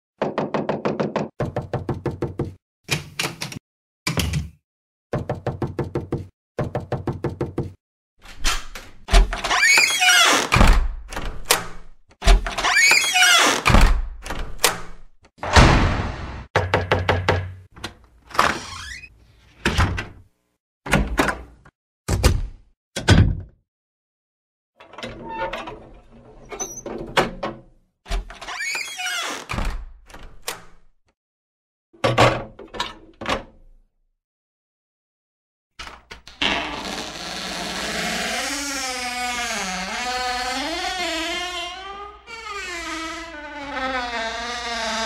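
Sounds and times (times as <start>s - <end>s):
door opening and shutting: 8.2s - 16.6s, 17.2s - 20.2s, 24.8s - 30.8s, 35.8s - 45.0s
clattering and squeaks: 9.4s - 10.5s, 12.5s - 13.6s, 26.4s - 27.1s
heavy thud: 15.4s - 16.5s.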